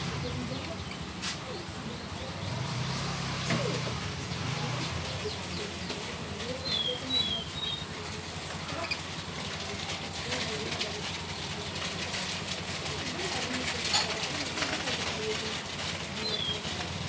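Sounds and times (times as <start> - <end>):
faint background voices: 0.0 - 17.0
canary chirping: 6.6 - 8.0, 16.2 - 16.8.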